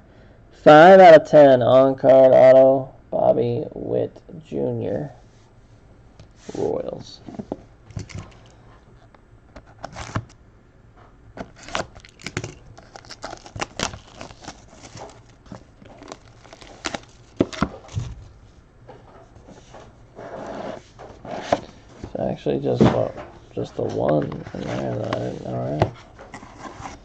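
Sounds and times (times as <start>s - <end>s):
card packaging crinkling: 11.4s - 18.4s.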